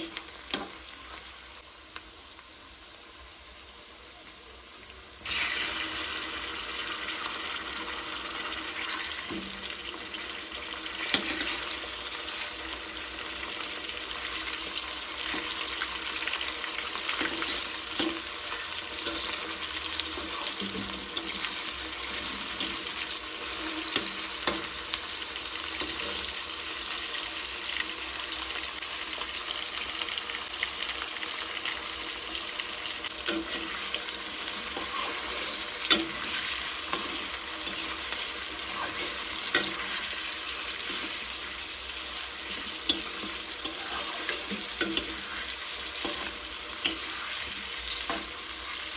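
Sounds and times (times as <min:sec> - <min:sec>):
food sizzling in hot oil: 0:00.0 - 0:48.9.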